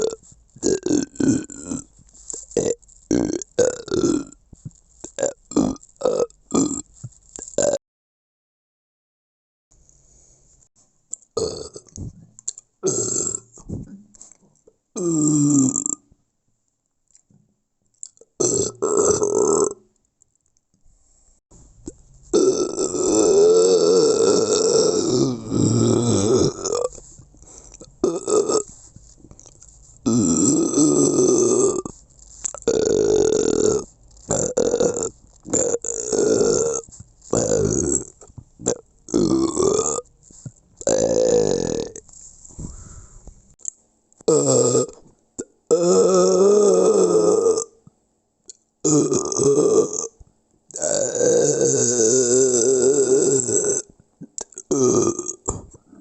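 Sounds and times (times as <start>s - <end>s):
person belching: 0.0s - 1.9s, 2.6s - 4.4s, 5.1s - 6.9s, 7.5s - 7.8s, 11.4s - 12.1s, 12.8s - 14.0s, 15.0s - 16.0s, 18.4s - 19.8s, 22.3s - 27.0s, 27.8s - 28.7s, 30.0s - 31.9s, 32.6s - 40.0s, 40.8s - 42.0s, 44.3s - 47.8s, 48.8s - 50.2s, 50.8s - 56.0s.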